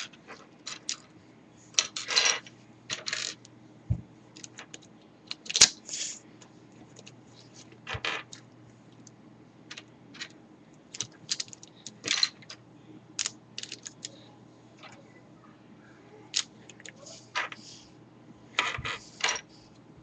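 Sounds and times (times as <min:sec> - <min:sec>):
plastic puzzle pieces clicking: 0:10.9 - 0:12.4, 0:13.2 - 0:14.1.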